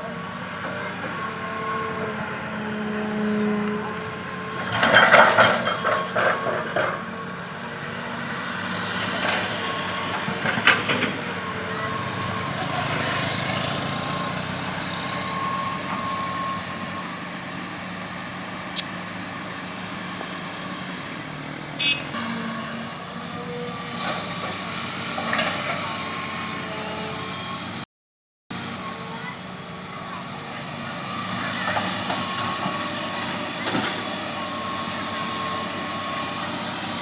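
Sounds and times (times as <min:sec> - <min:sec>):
diesel engine running: 0:00.0 - 0:27.8, 0:28.5 - 0:37.0
metallic clanking and clatter: 0:04.6 - 0:07.0.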